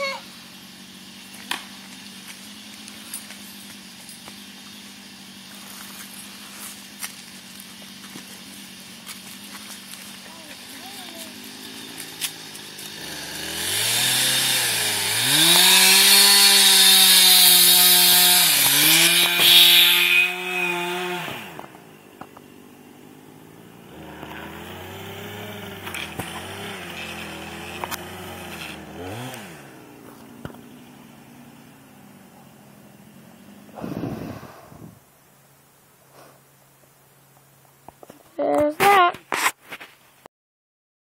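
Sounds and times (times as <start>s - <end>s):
chainsaw cutting wood: 0.0s - 22.4s, 23.8s - 30.8s.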